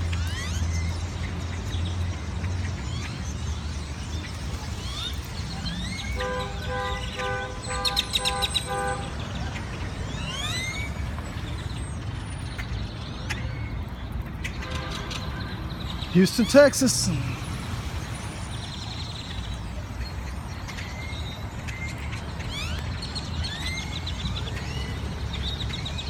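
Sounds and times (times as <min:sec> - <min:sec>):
birds chirping: 0:00.0 - 0:26.0
traffic rumble: 0:00.0 - 0:26.0
vehicle horn toots: 0:06.2 - 0:09.1.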